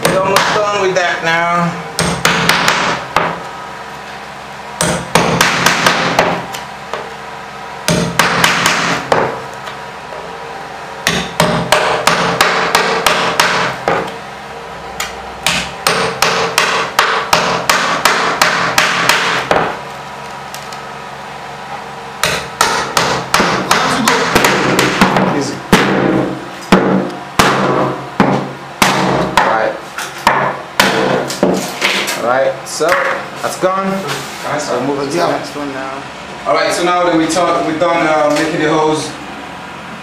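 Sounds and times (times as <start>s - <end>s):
hammer striking chisel: 0.0s - 0.8s, 2.0s - 3.4s, 4.8s - 7.1s, 7.9s - 9.4s, 11.0s - 14.2s, 15.0s - 19.8s, 22.2s - 32.2s.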